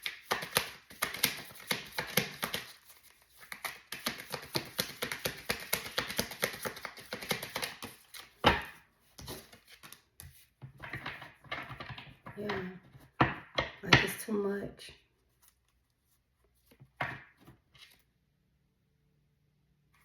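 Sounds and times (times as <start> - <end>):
cards being shuffled: 0.0 - 12.1.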